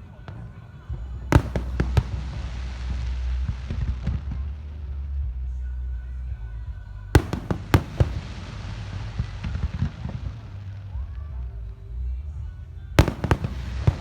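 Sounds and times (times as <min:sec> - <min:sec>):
background music: 0:00.0 - 0:14.0
fireworks crackling: 0:01.0 - 0:05.0, 0:07.2 - 0:11.0, 0:13.0 - 0:14.0
low rumble: 0:01.0 - 0:14.0
loud firework bangs: 0:01.2 - 0:04.4, 0:07.2 - 0:10.7, 0:13.0 - 0:14.0.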